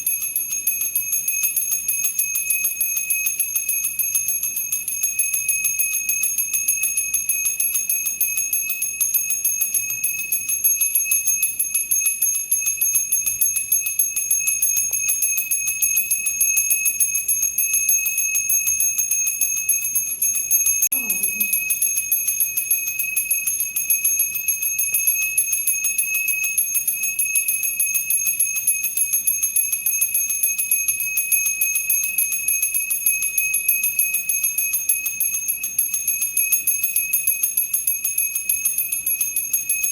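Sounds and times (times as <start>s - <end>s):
temple bell ringing: 20.2s - 22.2s.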